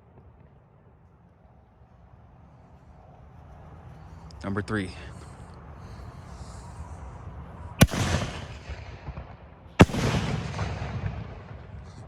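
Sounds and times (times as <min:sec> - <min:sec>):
firework bangs with rumble: 0:07.8 - 0:11.8.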